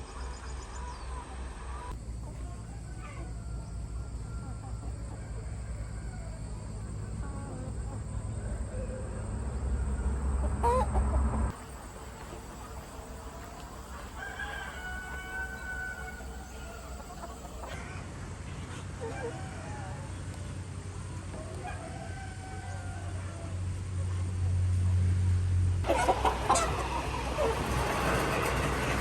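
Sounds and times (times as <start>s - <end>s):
chickens clucking: 1.7s - 17.8s, 25.8s - 29.0s
rooster crowing: 2.6s - 7.0s, 8.5s - 17.8s, 21.6s - 23.6s.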